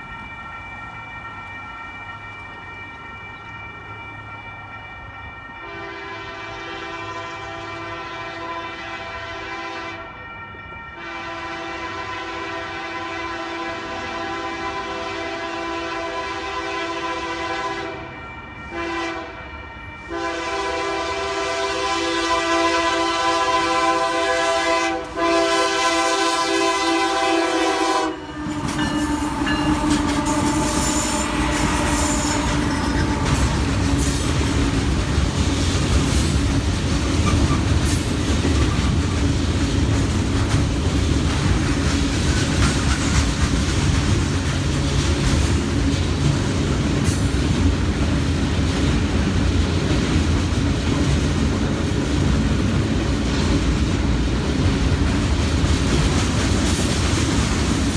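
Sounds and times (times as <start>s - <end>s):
train rumbling past: 0.0s - 57.9s
locomotive air horn: 5.6s - 10.2s, 11.0s - 18.1s, 18.7s - 35.0s
wheels clacking on rail joints: 27.2s - 57.9s.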